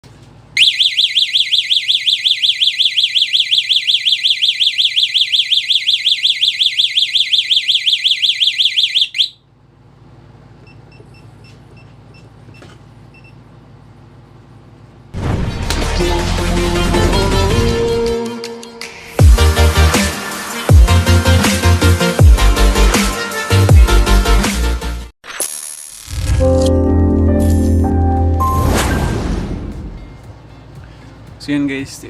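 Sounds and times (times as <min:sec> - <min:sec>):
burglar alarm siren warbling: 0:00.6 - 0:09.4.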